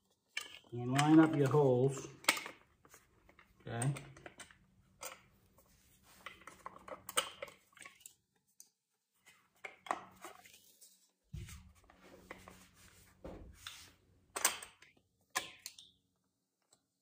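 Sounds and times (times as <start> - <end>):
metal grinder guard clicks and clatter: 0.3 - 1.6.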